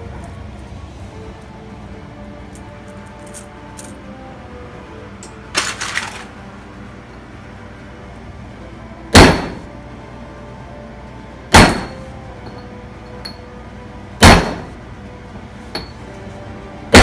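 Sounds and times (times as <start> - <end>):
loud metal clangs: 9.1 - 9.7, 11.5 - 12.6, 14.2 - 14.8.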